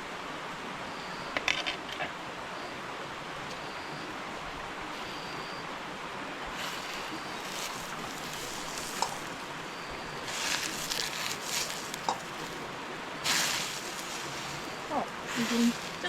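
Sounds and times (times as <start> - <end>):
empty wok sizzling: 6.6 - 16.0.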